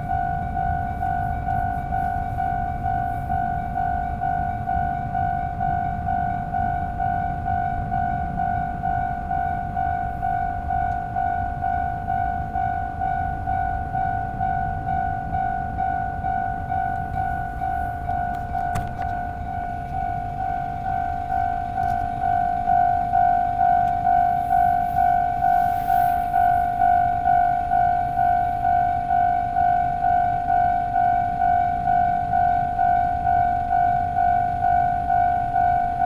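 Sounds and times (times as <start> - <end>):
level-crossing warning bell: 0.0 - 36.0.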